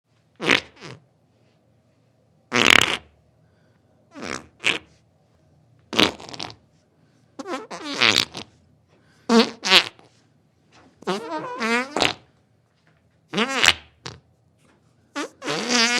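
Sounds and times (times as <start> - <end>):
sputtering fart sounds: 0.4 - 1.0, 2.5 - 3.1, 4.1 - 4.9, 5.9 - 6.6, 7.4 - 8.5, 9.3 - 10.1, 11.0 - 12.3, 13.3 - 14.3, 15.1 - 15.9.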